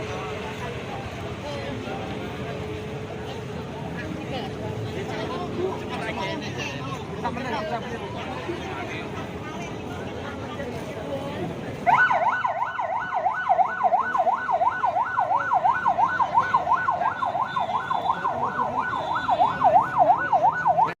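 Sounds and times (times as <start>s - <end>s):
electronic siren wailing: 11.9s - 21.0s.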